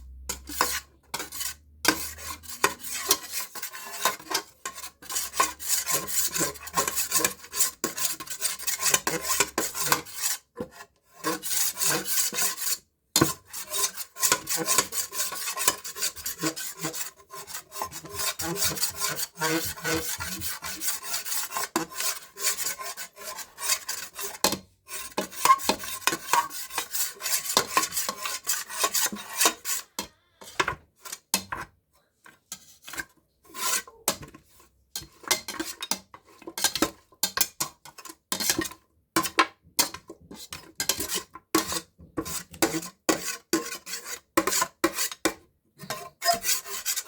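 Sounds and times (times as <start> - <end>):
utensil scraping burnt ribs: 0.3 - 10.5, 11.2 - 30.2.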